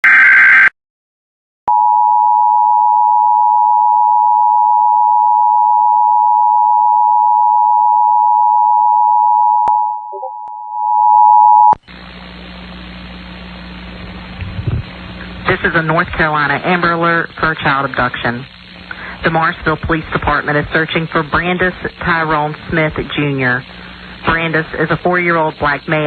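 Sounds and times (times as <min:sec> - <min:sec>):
two-tone alert signal: 0:03.5 - 0:11.8
radio hiss with low hum: 0:11.9 - 0:26.0.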